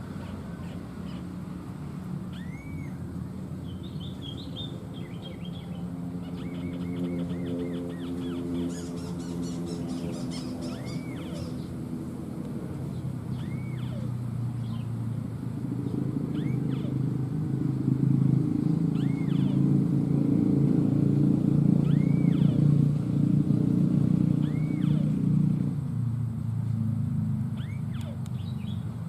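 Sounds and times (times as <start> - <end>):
motor engine rumble: 0.0 - 29.0
bird whistled calls: 2.3 - 3.0, 3.6 - 11.7, 13.3 - 14.9, 16.3 - 17.0, 18.9 - 19.6, 21.8 - 22.7, 24.4 - 25.2, 27.6 - 28.8.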